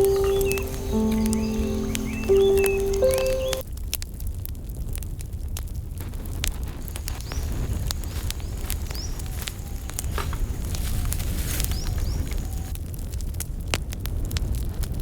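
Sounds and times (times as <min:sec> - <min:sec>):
cooking fire crackling: 0:06.7 - 0:12.5.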